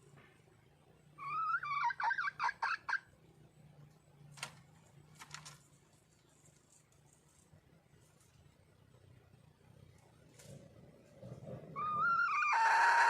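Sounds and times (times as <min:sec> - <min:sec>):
hen calling: 0:01.1 - 0:03.1, 0:11.7 - 0:13.0.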